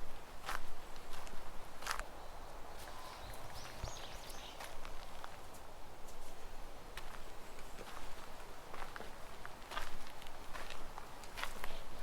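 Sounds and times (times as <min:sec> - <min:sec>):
footsteps walking: 0:02.7 - 0:11.8.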